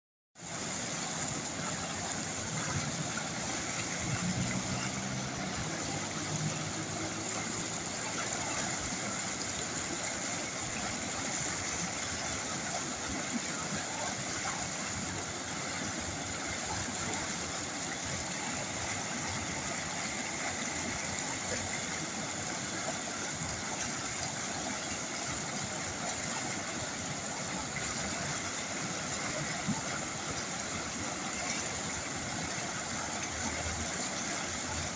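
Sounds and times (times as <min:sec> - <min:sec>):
river flowing: 0:00.4 - 0:34.9.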